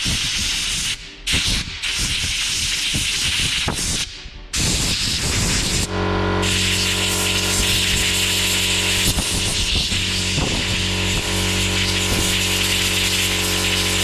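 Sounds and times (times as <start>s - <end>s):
gas jet hissing on burner: 5.0s - 14.0s
hum of held tones: 5.2s - 14.0s.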